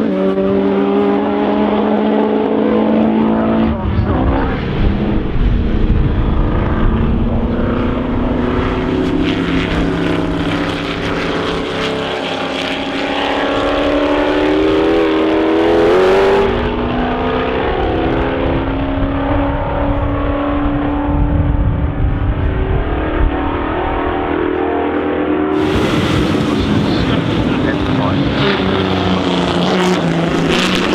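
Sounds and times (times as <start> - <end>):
racing car engines running hard: 0.0 - 30.9.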